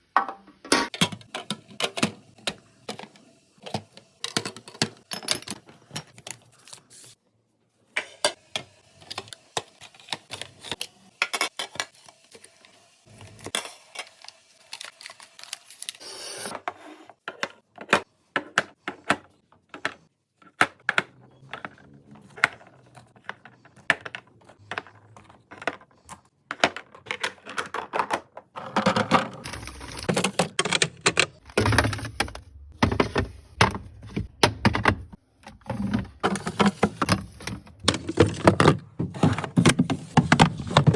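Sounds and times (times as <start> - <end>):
containers clicking and knocking: 0.1 - 6.4, 17.2 - 40.9.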